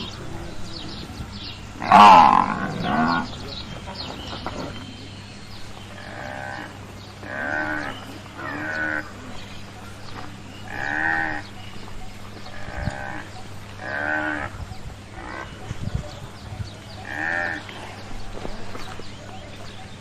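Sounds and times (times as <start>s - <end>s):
water buffalo bleat-like calls: 1.8s - 3.3s, 17.0s - 17.7s.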